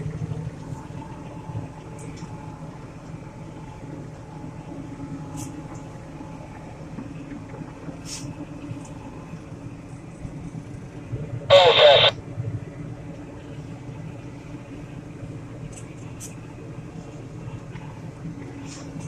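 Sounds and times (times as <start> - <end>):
tractor engine droning: 11.5 - 12.1.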